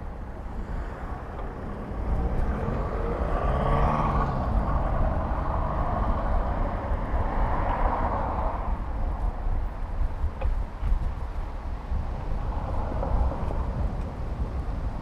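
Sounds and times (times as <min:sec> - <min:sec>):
road traffic: 0:00.0 - 0:15.0
car passing close by: 0:00.6 - 0:08.9.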